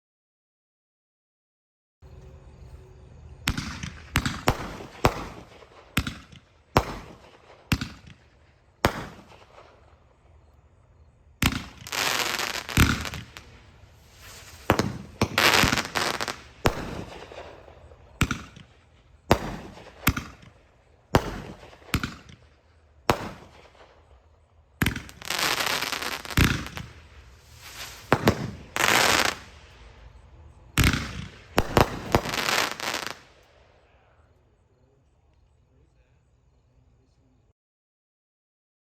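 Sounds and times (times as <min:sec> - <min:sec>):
fireworks bangs: 0:02.0 - 0:34.1
fireworks crackling: 0:03.2 - 0:34.0.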